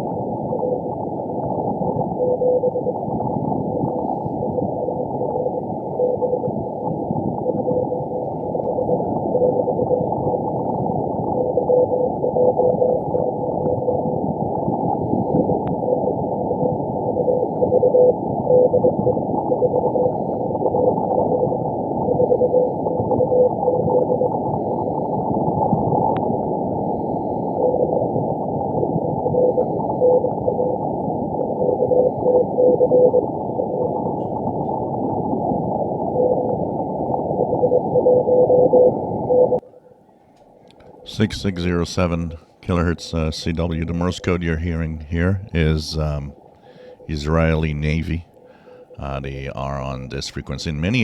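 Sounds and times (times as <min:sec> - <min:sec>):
morse code tone: 0:02.1 - 0:03.0, 0:04.0 - 0:10.4, 0:11.4 - 0:14.0, 0:17.1 - 0:25.0, 0:29.2 - 0:30.8, 0:31.6 - 0:34.0, 0:37.4 - 0:39.6, 0:41.0 - 0:48.2
radio band hiss: 0:40.8 - 0:51.0.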